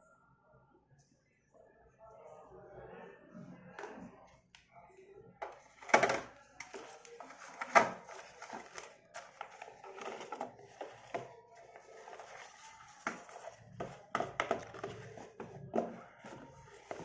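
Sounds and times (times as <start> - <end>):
hands handling a smartphone: 5.4 - 17.0.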